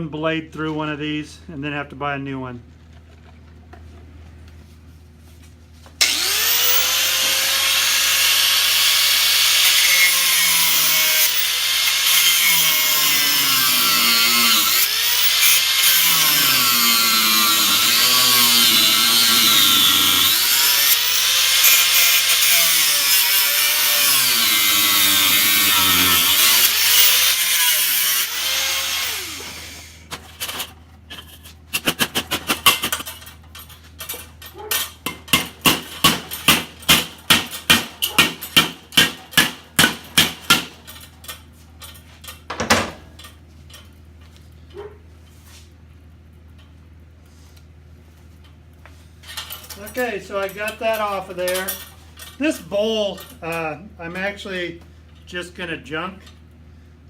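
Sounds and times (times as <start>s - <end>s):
angle grinder cutting bolt: 6.0s - 30.6s.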